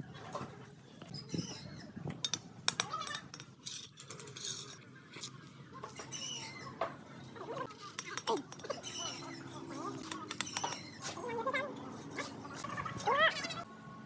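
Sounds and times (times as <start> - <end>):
metal tools clinking on tile: 2.2 - 5.3, 7.8 - 11.1
tools scraping on tile: 7.7 - 11.2.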